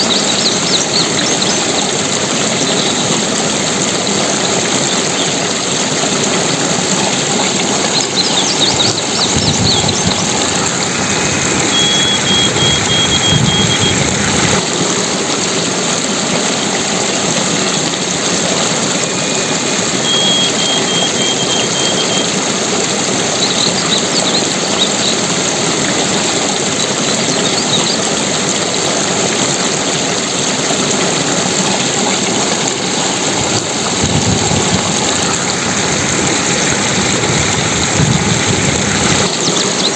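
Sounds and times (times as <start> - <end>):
rushing water: 0.0 - 39.9
high chirps and trills: 7.6 - 14.6, 19.2 - 22.4.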